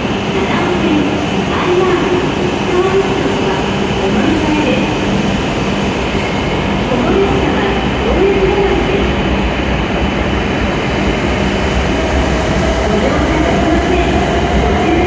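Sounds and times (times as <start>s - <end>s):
faint voices: 12.5s - 15.0s.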